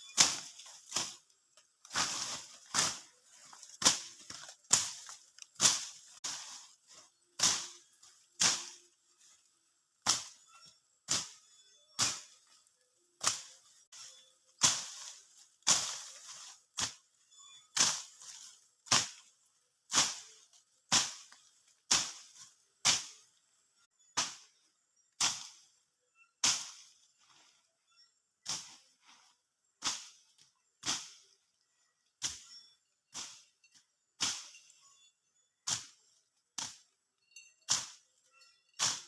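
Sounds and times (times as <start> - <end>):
blade swishing through grass: 0.0 - 9.4, 10.0 - 12.6, 13.2 - 19.3, 19.9 - 23.3, 25.2 - 25.7, 26.4 - 27.6, 28.4 - 31.4, 32.2 - 33.5, 34.2 - 35.0, 35.7 - 36.8, 37.7 - 38.1, 38.7 - 39.0.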